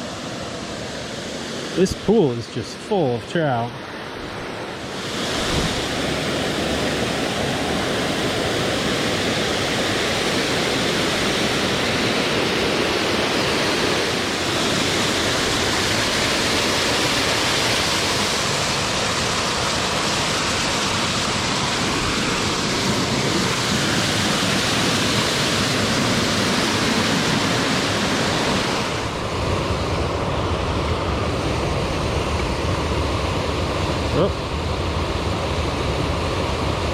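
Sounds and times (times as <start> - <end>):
stream and waterfall rushing: 0.0 - 36.9.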